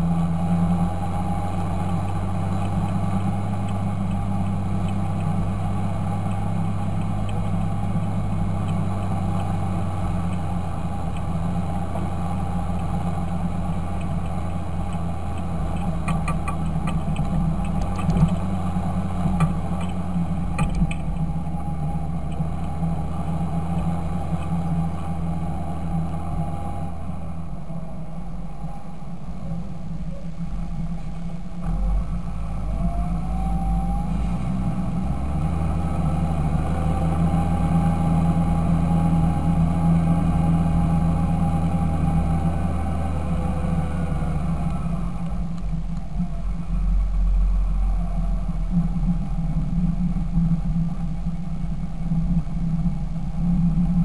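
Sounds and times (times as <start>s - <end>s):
tractor diesel engine running: 0.0s - 54.0s
faint clicks: 2.0s - 5.4s, 8.6s - 9.6s, 13.7s - 18.5s.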